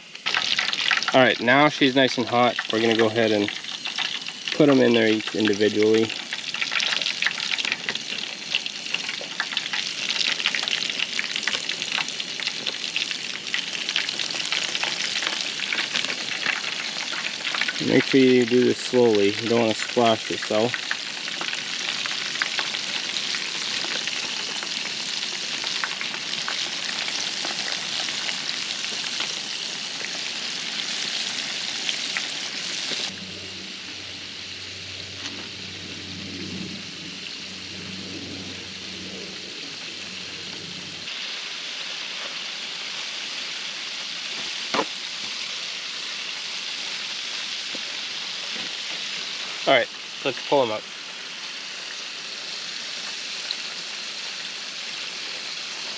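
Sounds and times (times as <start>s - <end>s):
food deep-frying in oil: 0.0s - 55.9s
low hum: 33.1s - 41.1s.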